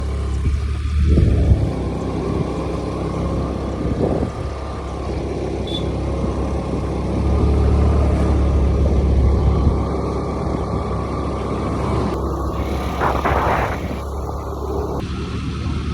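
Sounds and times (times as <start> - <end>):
motor scooter rumble: 0.0 - 15.9.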